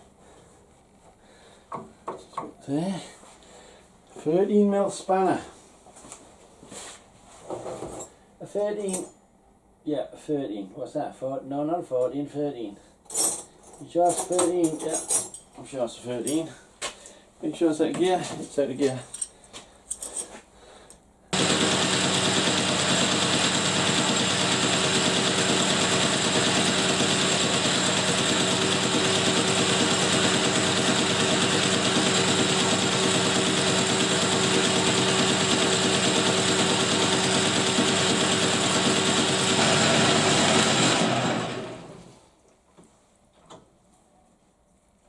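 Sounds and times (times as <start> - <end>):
metal lathe motor whine: 21.4 - 42.0.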